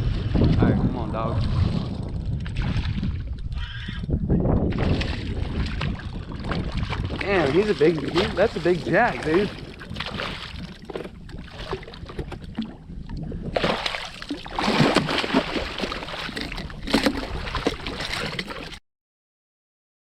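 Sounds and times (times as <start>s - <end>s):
water splashing against boat: 0.0s - 3.6s, 4.6s - 18.8s
steady low rumble: 0.0s - 13.6s.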